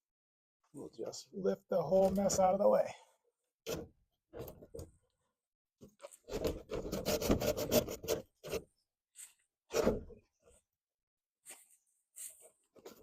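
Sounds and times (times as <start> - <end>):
wood wall section scraping: 6.0 - 8.8, 9.7 - 10.4.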